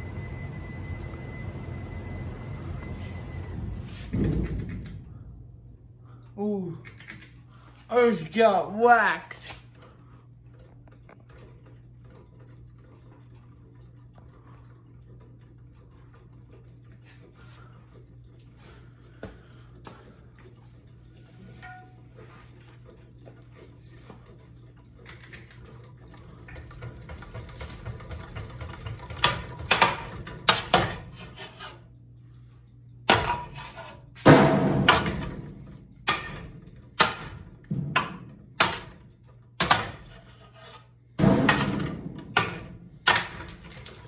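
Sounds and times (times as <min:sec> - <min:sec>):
steady low hum: 0:00.0 - 0:44.0
metallic bangs and crashes: 0:34.2 - 0:38.9, 0:41.2 - 0:43.6.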